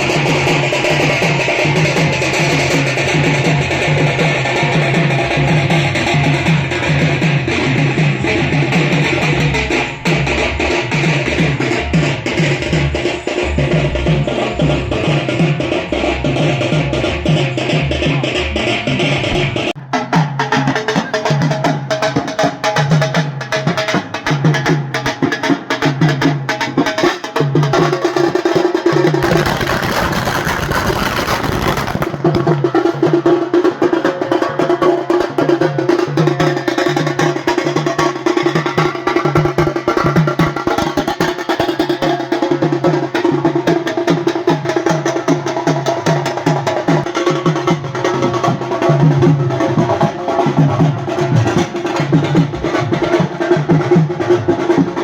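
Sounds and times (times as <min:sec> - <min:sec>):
music with drum beat: 0:00.0 - 0:55.0
rushing noise sweep: 0:29.2 - 0:32.4.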